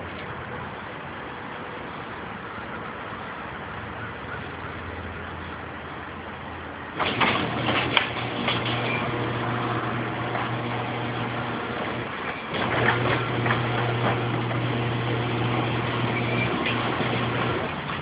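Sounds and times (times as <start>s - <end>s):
garage door opener motor humming: 7.0s - 18.0s
garage door rattling: 7.0s - 18.0s.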